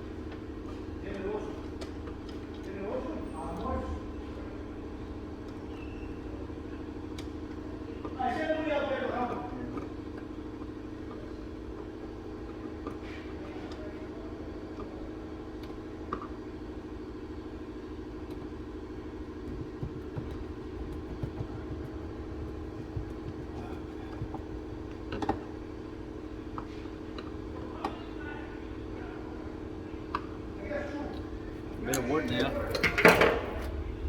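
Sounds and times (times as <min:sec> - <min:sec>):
engine-like hum: 0:00.0 - 0:34.0.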